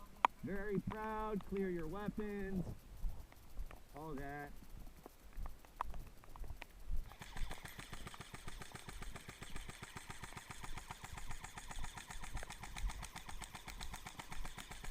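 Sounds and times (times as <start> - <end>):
engine starting and running: 7.1 - 14.9.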